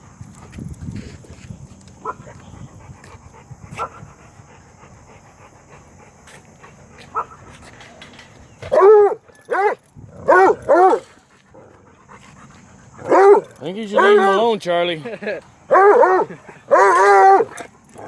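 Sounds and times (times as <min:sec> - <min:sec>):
dog barking: 0:08.7 - 0:11.0, 0:13.0 - 0:13.4, 0:14.0 - 0:14.4, 0:15.7 - 0:17.5.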